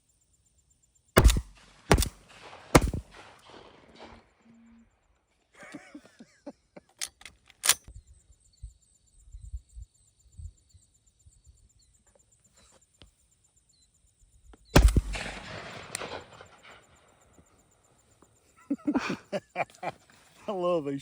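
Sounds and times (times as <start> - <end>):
faint high insect-like pulsing: 0.0 - 1.6, 4.5 - 14.7
sharp clicks and knocks: 1.2 - 3.2
shotgun shot: 1.2 - 4.3, 14.8 - 17.2.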